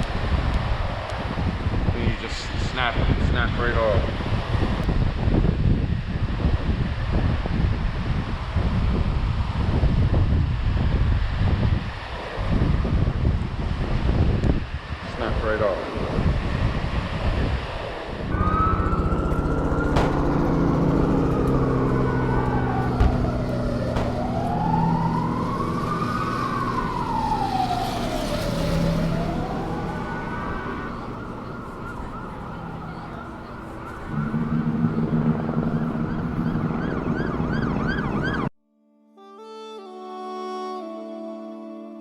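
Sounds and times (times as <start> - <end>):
wind noise: 0.0 - 38.5
droning engine with whine: 18.3 - 38.5
emergency vehicle siren: 18.3 - 38.5
low steady siren tone: 18.3 - 38.5.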